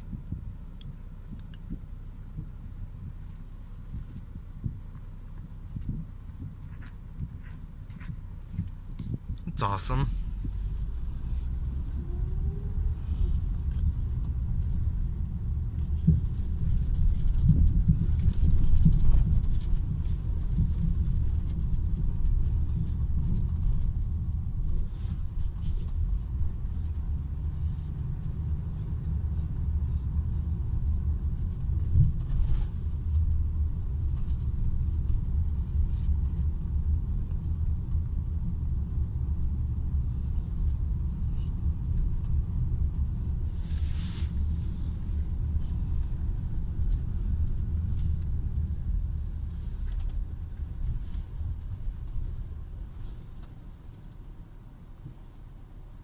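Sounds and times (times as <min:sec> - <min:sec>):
car road rumble: 0:00.0 - 0:56.0.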